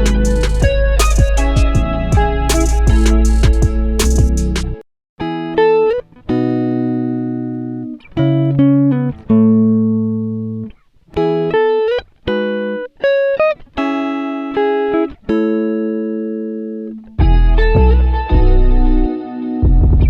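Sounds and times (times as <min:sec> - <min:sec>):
deep bass: 0:00.0 - 0:04.8, 0:17.2 - 0:20.0
plucked guitar notes: 0:00.0 - 0:20.0.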